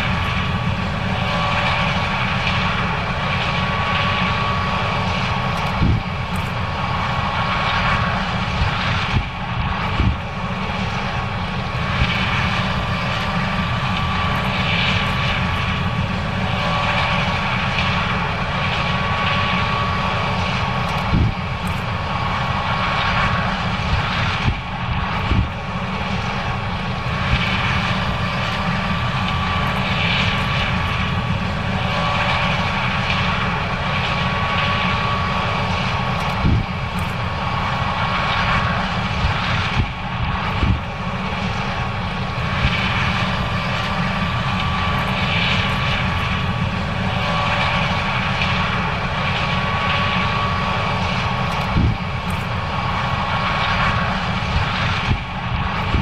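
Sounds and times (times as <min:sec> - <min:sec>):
combine harvester engine running: 0:00.0 - 0:56.0
high mechanical whine: 0:00.0 - 0:56.0.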